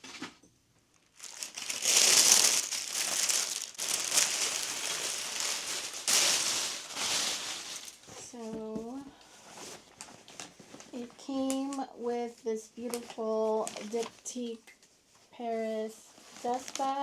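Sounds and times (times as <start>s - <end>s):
paper packaging crinkling: 0.9s - 8.3s, 12.9s - 14.3s, 16.2s - 17.0s.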